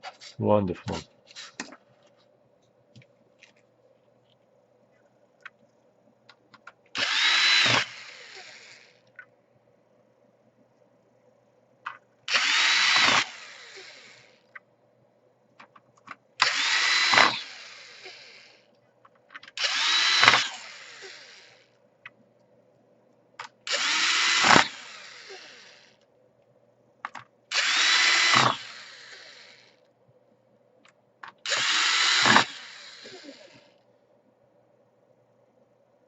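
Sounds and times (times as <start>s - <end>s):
electric screwdriver motor: 7.0s - 9.1s, 12.3s - 14.4s, 16.4s - 18.6s, 19.6s - 21.6s, 23.7s - 26.0s, 27.5s - 29.7s, 31.5s - 33.7s.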